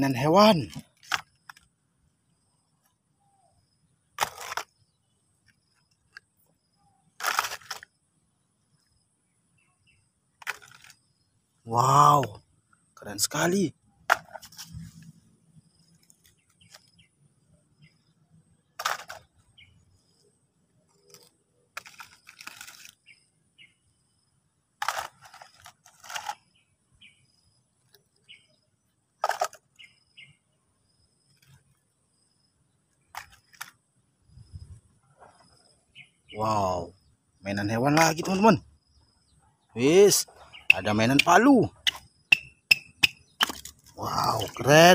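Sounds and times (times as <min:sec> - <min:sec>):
plastic toys knocking and clicking: 0:18.8 - 0:19.4, 0:29.2 - 0:29.7, 0:40.8 - 0:44.6.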